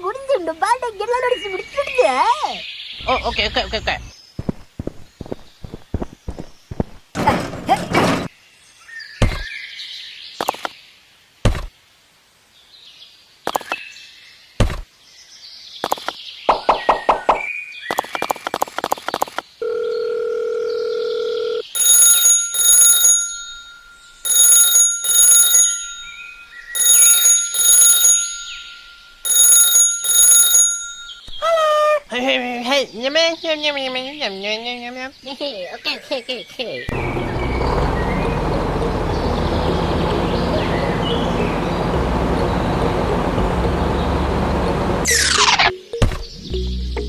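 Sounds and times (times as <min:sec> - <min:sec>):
electronic ringing in double bursts: 0:21.8 - 0:31.3.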